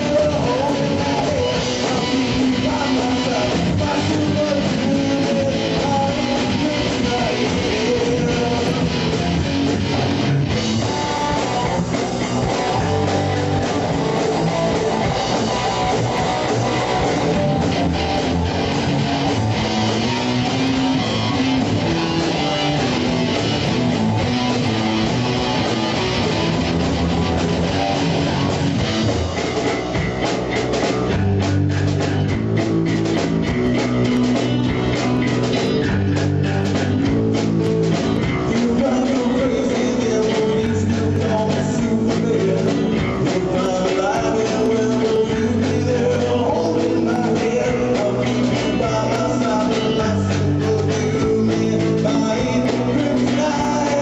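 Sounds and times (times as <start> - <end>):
rock band instrumental: 0.0 - 54.0.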